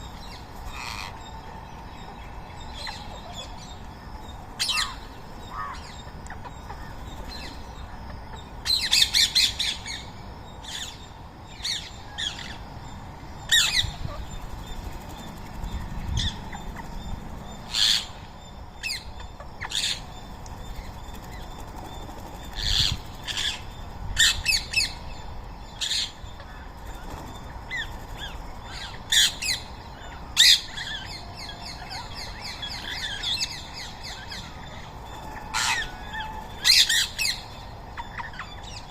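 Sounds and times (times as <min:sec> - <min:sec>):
parakeets squawking: 0:35.2 - 0:37.4.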